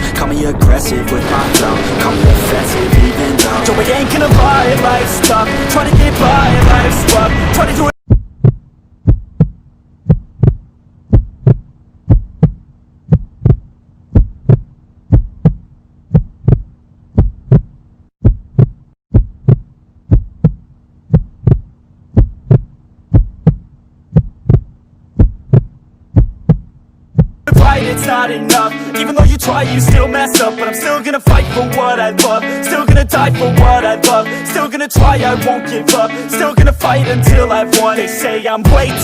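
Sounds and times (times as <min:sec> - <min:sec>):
heartbeat thumps: 0:08.0 - 0:27.7
low steady hum: 0:08.1 - 0:27.5.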